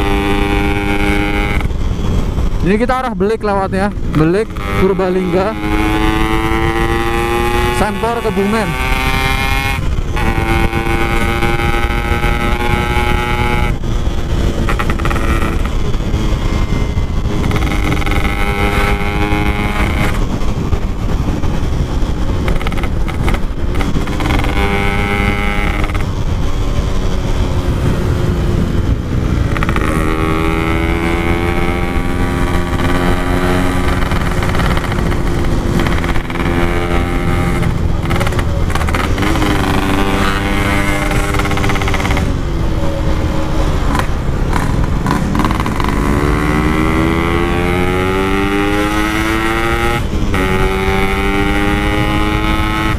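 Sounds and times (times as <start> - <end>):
two-stroke motorcycle engine revving: 0.0 - 52.9.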